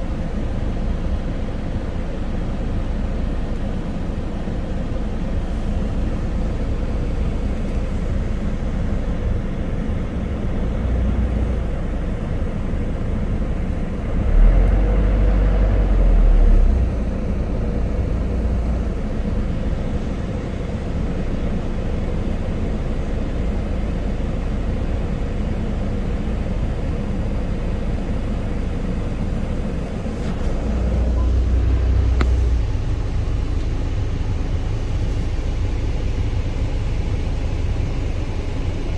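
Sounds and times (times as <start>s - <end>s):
truck engine running: 0.0s - 38.9s.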